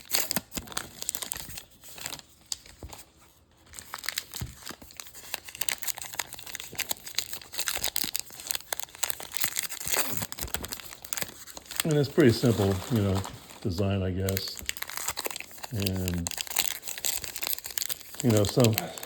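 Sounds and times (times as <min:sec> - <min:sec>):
cards and packaging crinkling: 0:00.0 - 0:19.0.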